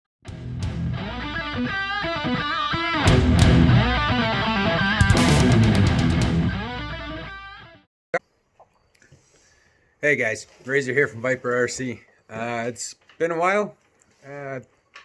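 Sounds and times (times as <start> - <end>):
rock music with electric guitar: 0.3 - 7.9.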